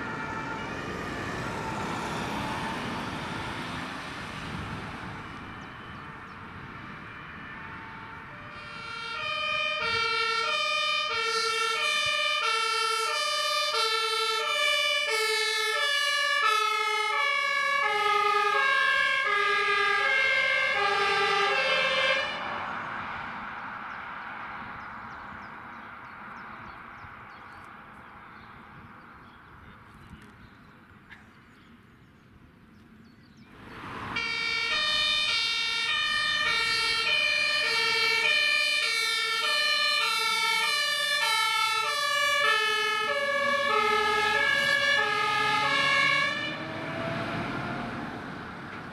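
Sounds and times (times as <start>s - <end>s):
vehicle passing: 0.0s - 11.7s, 12.8s - 29.0s, 33.5s - 48.9s
two-tone emergency siren: 0.0s - 23.2s, 33.6s - 48.9s.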